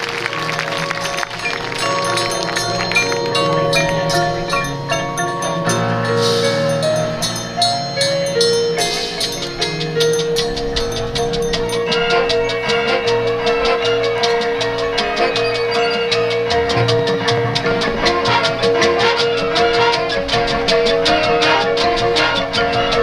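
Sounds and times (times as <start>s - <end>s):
marching band playing: 0.0s - 23.0s
marimba and xylophone notes: 0.0s - 23.0s
cymbal crashes: 1.8s - 11.8s.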